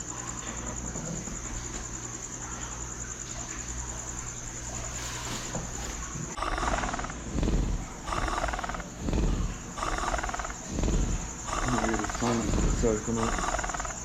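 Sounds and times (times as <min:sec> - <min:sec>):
crickets chirping: 0:00.0 - 0:14.0
low steady hum: 0:00.0 - 0:14.0
loud rough noise: 0:06.3 - 0:14.0.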